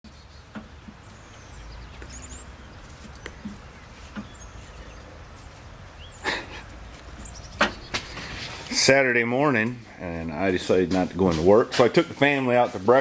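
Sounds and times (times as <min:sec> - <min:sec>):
faint bird chirps: 0:00.1 - 0:08.4.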